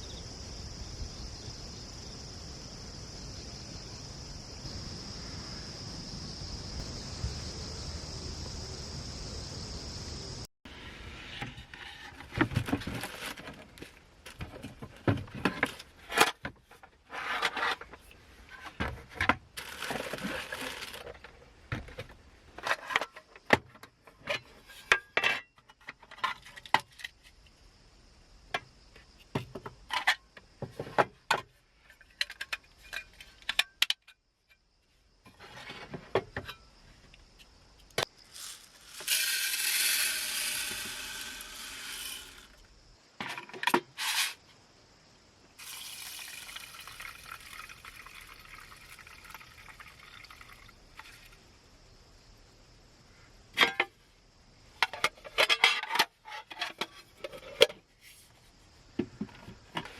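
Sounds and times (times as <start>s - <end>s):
small metal objects clinking: 38.2s - 42.6s.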